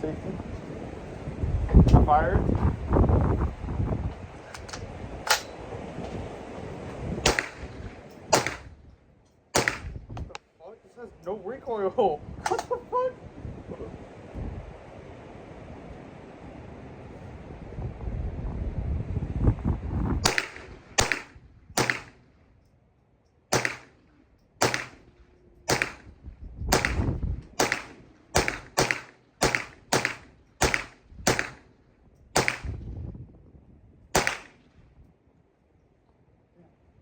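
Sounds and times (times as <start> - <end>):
wind noise on microphone: 0.0 - 10.4, 12.0 - 22.3, 24.6 - 35.3
rifle shots: 4.5 - 5.7, 7.2 - 8.8, 9.5 - 10.0, 20.2 - 22.3, 23.5 - 25.1, 25.7 - 31.7, 32.4 - 32.8, 34.2 - 34.7.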